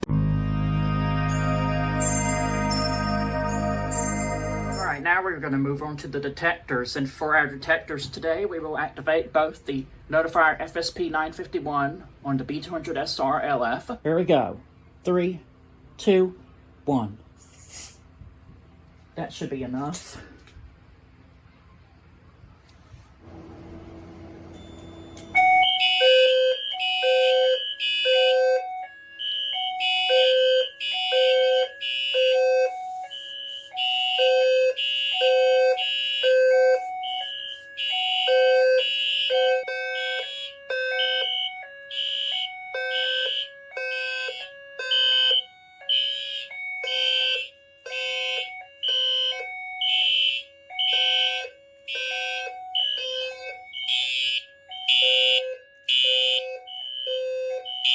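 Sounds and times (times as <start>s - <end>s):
fire alarm horns pulsing: 0.0s - 5.1s, 23.2s - 57.9s
low-frequency alarm sounder: 0.0s - 5.1s, 23.3s - 57.9s.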